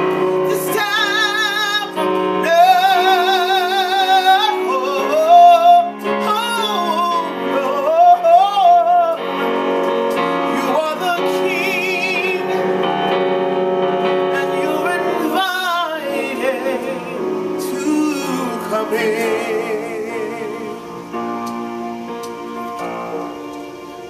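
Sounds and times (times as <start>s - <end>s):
sustained instrumental chords: 0.0s - 24.0s
woman singing with vibrato: 0.4s - 9.2s.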